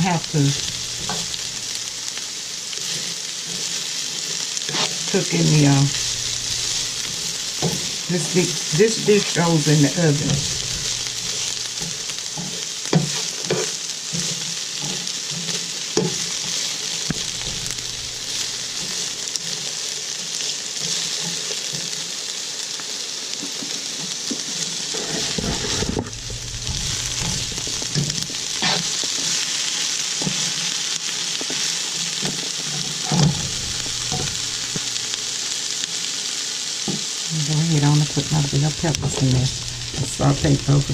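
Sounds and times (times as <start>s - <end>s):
onion sizzling in oil: 0.0s - 40.9s
utensil scraping a pan: 0.2s - 19.6s, 24.6s - 29.5s, 32.2s - 35.3s.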